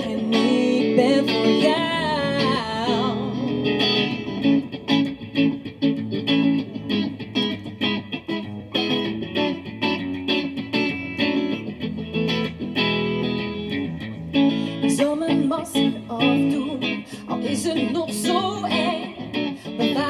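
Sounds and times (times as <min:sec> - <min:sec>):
person singing: 0:00.0 - 0:04.2, 0:14.7 - 0:20.0
guitar playing: 0:00.0 - 0:20.0.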